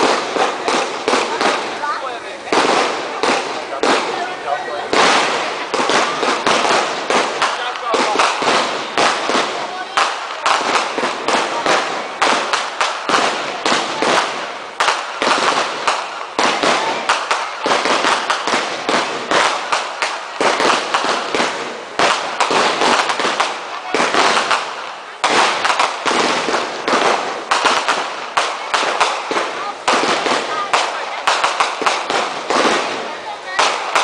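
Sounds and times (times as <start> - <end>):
fireworks crackling bangs: 0.0 - 34.0.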